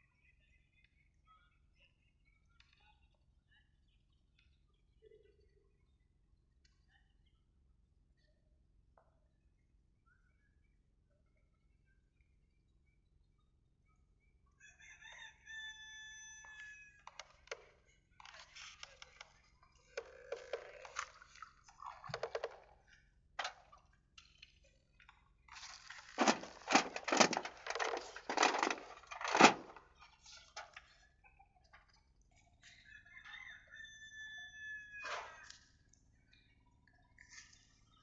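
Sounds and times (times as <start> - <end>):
rooster crowing: 14.6 - 17.0, 32.9 - 35.5.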